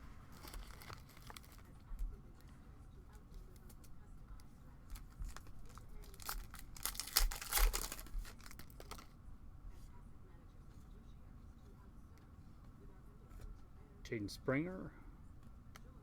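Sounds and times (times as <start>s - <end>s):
foil wrapper tearing and crinkling: 0.3s - 2.0s, 4.9s - 9.1s.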